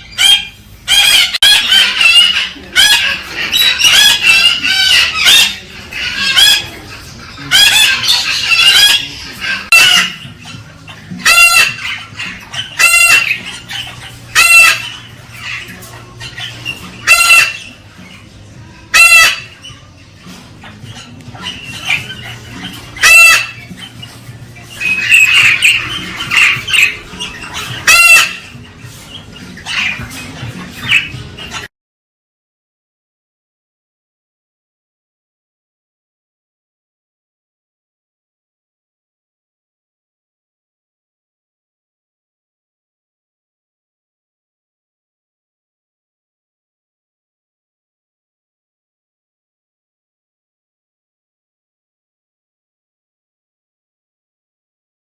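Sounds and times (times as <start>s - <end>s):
cockatoo calling harshly: 0.0s - 18.2s, 18.9s - 19.8s, 20.6s - 31.7s.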